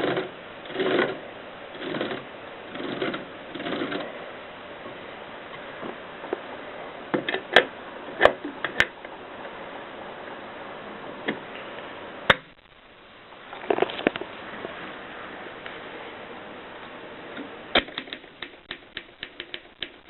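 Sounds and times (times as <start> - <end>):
steady hiss: 0.0 - 20.0
typewriter clacks: 17.8 - 20.0.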